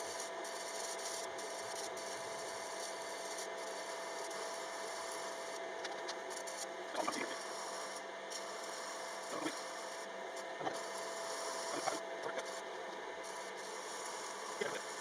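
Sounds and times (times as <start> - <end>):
workshop hum: 3.4 - 15.0.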